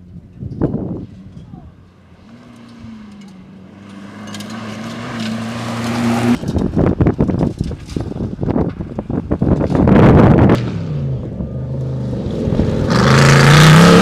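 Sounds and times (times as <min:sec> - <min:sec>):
rally car engine passing by: 0:00.8 - 0:07.0, 0:09.6 - 0:14.0.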